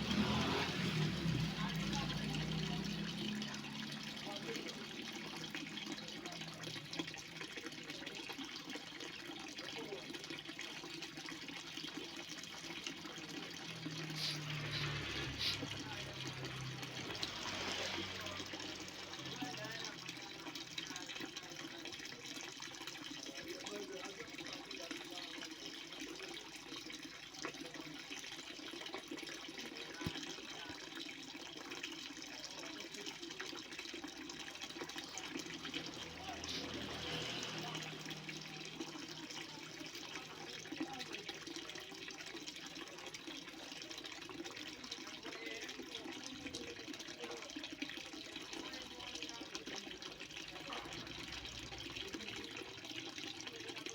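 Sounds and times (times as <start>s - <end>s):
water rushing: 0.0s - 22.2s, 32.4s - 43.9s, 44.8s - 53.9s.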